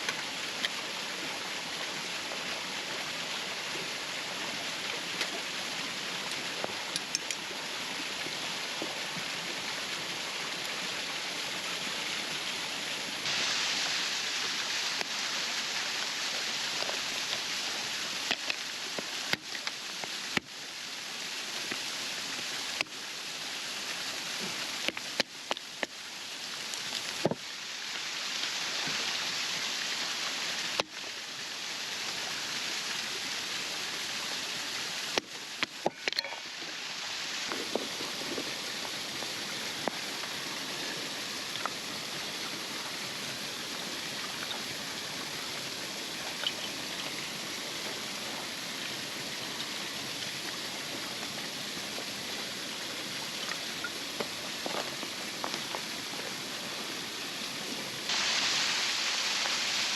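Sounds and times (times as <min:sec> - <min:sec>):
waterfall rushing: 0:00.0 - 0:59.9.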